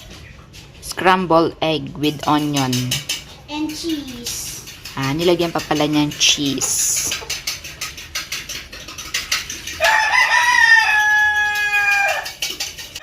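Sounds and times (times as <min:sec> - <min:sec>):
rooster crowing: 0:09.8 - 0:12.4.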